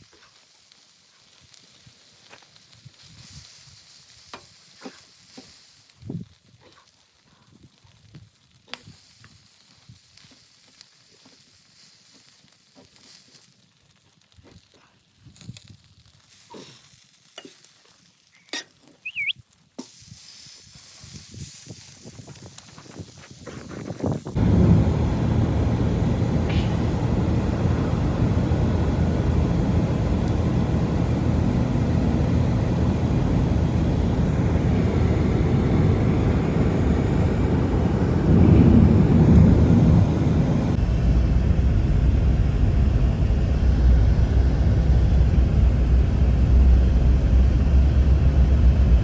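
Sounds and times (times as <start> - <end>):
blizzard wind rushing: 24.4 - 49.0.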